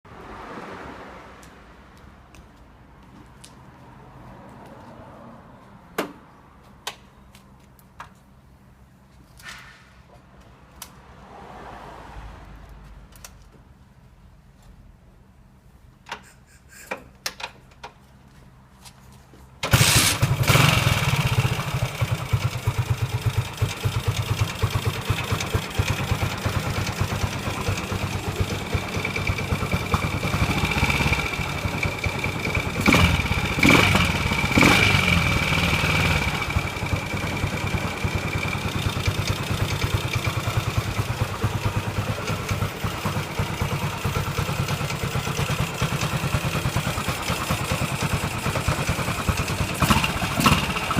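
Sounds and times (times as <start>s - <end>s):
engine starter clicks: 19.6s - 20.5s
motorcycle engine idling: 19.7s - 50.9s.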